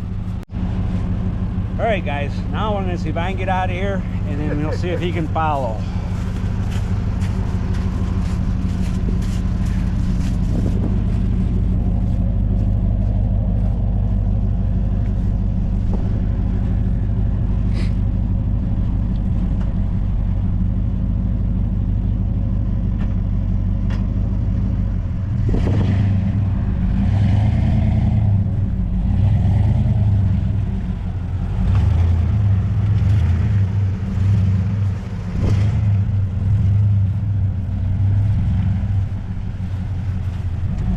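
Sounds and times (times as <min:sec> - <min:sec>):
vehicle engine under load: 0:00.0 - 0:40.9.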